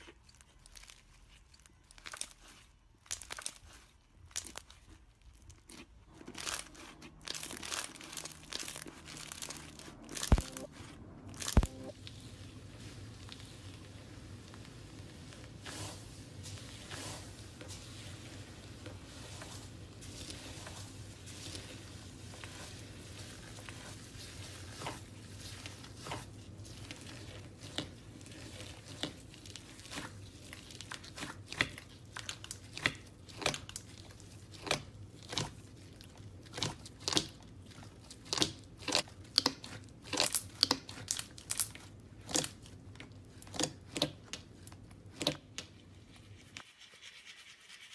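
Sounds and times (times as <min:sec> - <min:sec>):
low steady hum: 0:05.3 - 0:33.3
slime crackling pops: 0:07.3 - 0:10.7.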